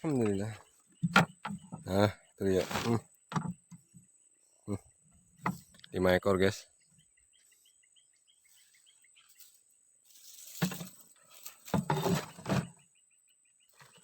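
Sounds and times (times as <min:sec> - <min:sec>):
rustling and knocking: 0:00.2 - 0:01.9, 0:02.6 - 0:04.0, 0:05.4 - 0:05.8, 0:10.1 - 0:12.8.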